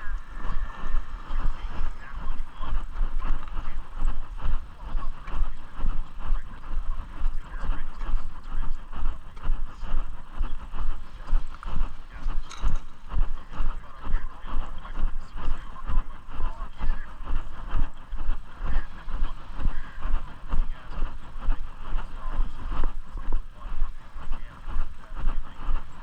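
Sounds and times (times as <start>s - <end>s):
steady rumble and hiss: 0.0s - 26.0s.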